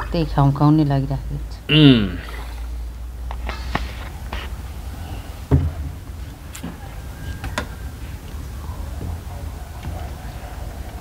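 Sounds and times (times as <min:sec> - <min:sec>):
thump: 0:05.5 - 0:05.9.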